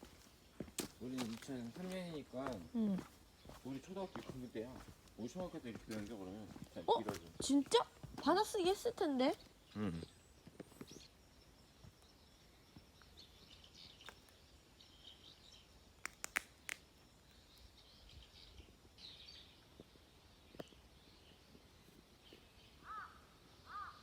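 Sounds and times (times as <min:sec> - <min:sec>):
faint bird chirps: 0:08.3 - 0:16.0, 0:16.6 - 0:24.0
sharp clicks: 0:16.0 - 0:16.8.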